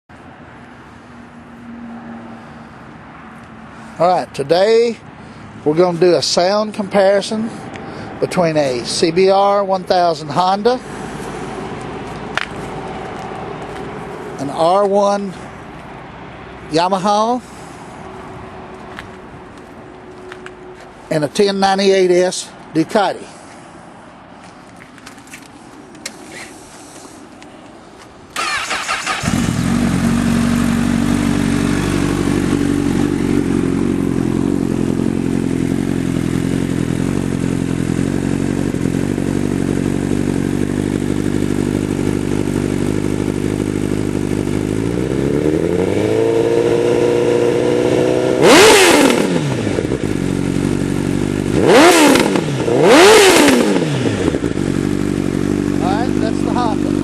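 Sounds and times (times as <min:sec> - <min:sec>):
motorcycle engine starting: 0:28.3 - 0:57.0
motorcycle engine idling: 0:28.4 - 0:47.5, 0:49.5 - 0:57.0
motorcycle throttle blips: 0:28.4 - 0:57.0.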